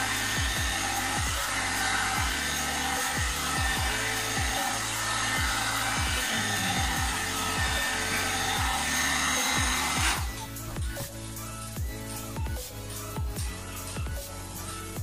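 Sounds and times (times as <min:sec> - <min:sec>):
hair dryer brush blowing: 0:00.0 - 0:11.1
background music: 0:00.0 - 0:15.0.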